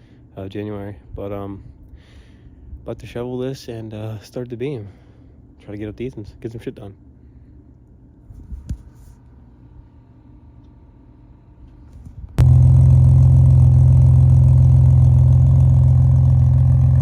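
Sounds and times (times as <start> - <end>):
car engine running: 12.4 - 17.0.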